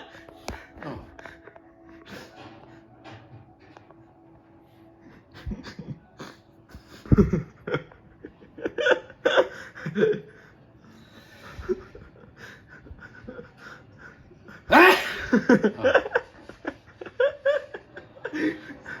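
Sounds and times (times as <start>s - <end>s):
laughter: 5.0s - 10.6s, 11.4s - 19.0s
man sneezing: 14.7s - 15.4s.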